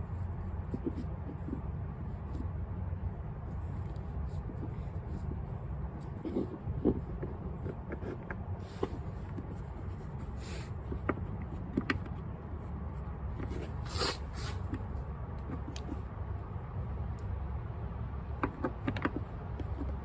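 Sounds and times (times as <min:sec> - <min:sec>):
steady low rumble: 0:00.0 - 0:20.0
cargo net rustling scrapes: 0:13.4 - 0:14.7.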